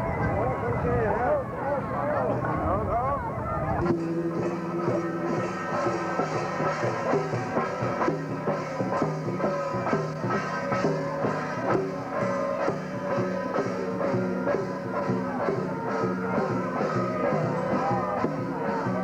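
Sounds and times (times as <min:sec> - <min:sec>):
steady drum beat: 0:03.8 - 0:19.0.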